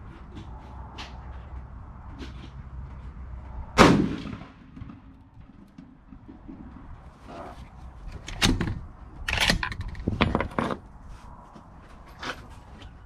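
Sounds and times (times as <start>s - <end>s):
equipment clacking and knocking: 8.1s - 10.9s.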